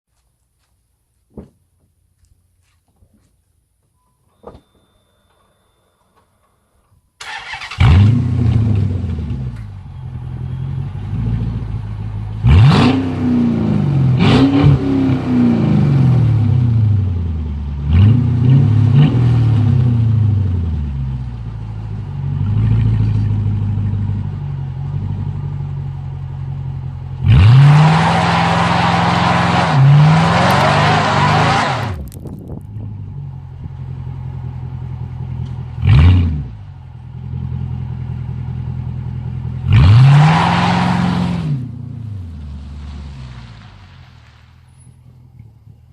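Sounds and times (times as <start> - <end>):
car engine starting and revving: 7.2 - 45.7.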